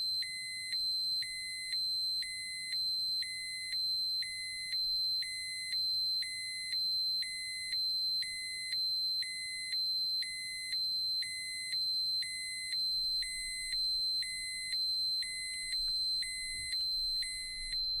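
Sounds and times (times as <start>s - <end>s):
steady high-pitched alarm tone: 9.3s - 18.0s.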